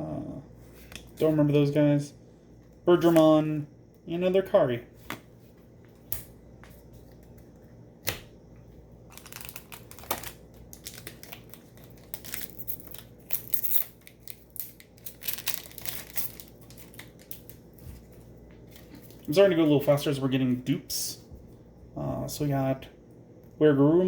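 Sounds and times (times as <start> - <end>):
wrapper being torn and crinkled: 9.1 - 19.3.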